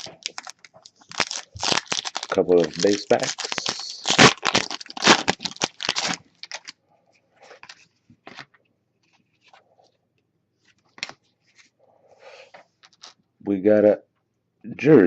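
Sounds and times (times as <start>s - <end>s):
foil wrapper crinkling and tearing: 0.0s - 6.8s.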